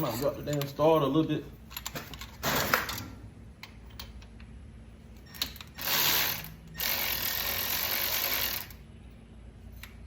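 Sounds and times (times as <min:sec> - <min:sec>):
ratchet wrench clicking: 0:05.4 - 0:08.8.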